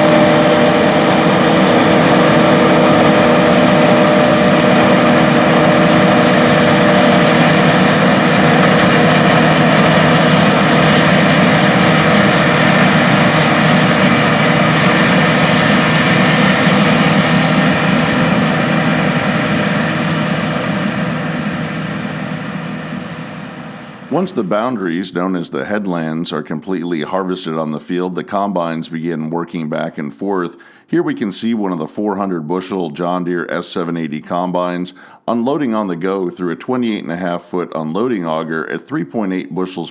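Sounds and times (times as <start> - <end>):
combine harvester engine hum: 0.0 - 25.0.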